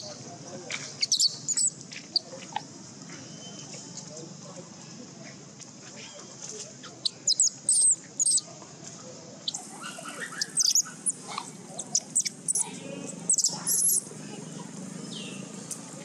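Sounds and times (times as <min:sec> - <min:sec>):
baby monkey squealing: 0:01.0 - 0:01.7, 0:07.0 - 0:08.4, 0:09.5 - 0:14.1.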